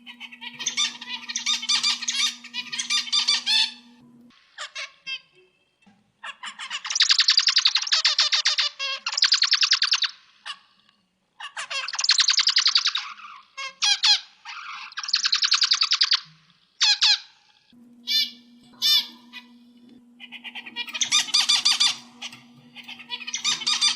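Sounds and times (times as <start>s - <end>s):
single bird calls: 0.0s - 5.3s, 18.0s - 23.9s
finch song buzzy notes: 0.0s - 5.9s, 17.8s - 23.9s
faint steady hum: 0.0s - 6.2s, 17.5s - 23.9s.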